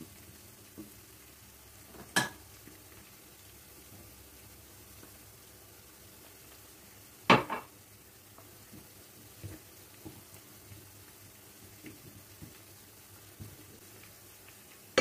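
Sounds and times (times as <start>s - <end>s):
dishes clattering: 7.3s - 7.7s
kitchenware knocks and clinks: 7.3s - 7.7s.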